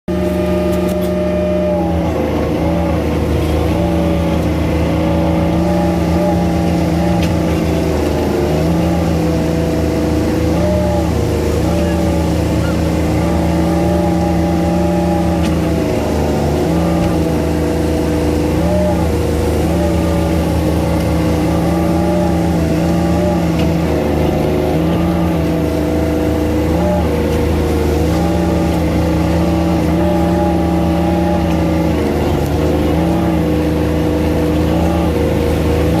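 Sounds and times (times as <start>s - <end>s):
excavator diesel engine running: 0.1s - 36.0s.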